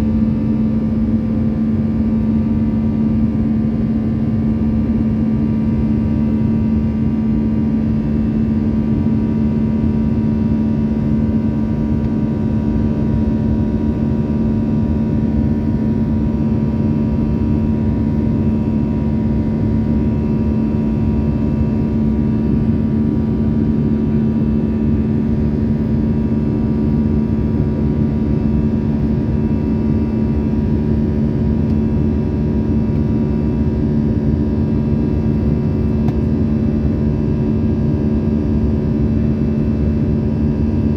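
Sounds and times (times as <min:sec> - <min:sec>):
jet airliner cabin rumble: 0:11.6 - 0:37.4.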